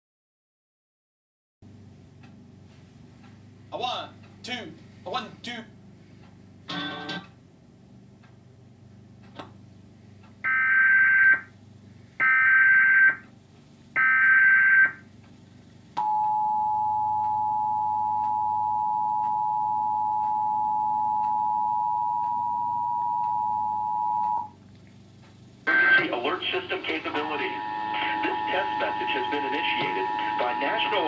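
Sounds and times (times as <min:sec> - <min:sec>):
steady dual alert tone: 0:06.6 - 0:07.4, 0:10.4 - 0:11.5, 0:12.2 - 0:13.3, 0:14.0 - 0:15.1, 0:16.0 - 0:24.6, 0:25.6 - 0:31.0
digital data bursts: 0:25.7 - 0:31.0.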